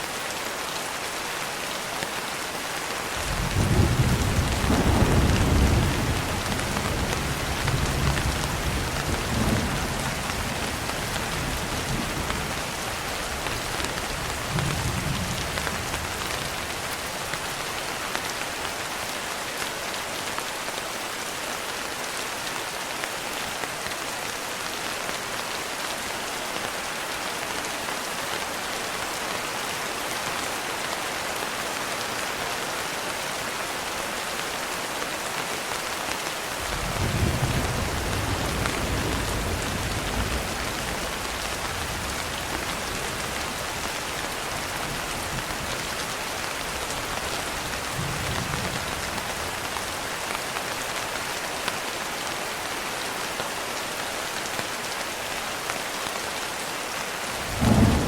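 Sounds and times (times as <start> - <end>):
steady rain falling: 0.0 - 58.0
thunder rumbling: 3.3 - 11.0, 57.4 - 58.0.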